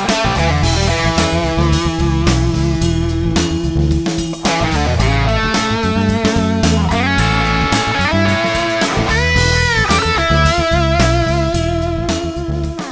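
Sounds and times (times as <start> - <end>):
backing track with bass and drums: 0.0 - 12.9.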